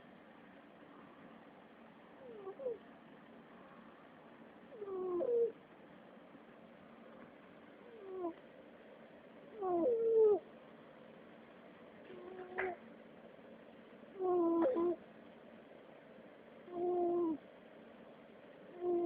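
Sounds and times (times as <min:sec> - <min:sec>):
cat moaning calls: 0:04.7 - 0:05.6, 0:09.6 - 0:10.5, 0:14.2 - 0:15.0, 0:16.7 - 0:17.4, 0:18.7 - 0:19.0.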